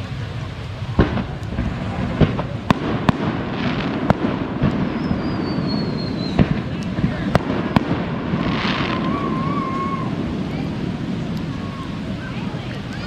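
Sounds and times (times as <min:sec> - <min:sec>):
fireworks bangs: 0:00.0 - 0:13.0
heavy rain hiss: 0:00.0 - 0:13.0
firework whistle falling in pitch: 0:08.8 - 0:10.2.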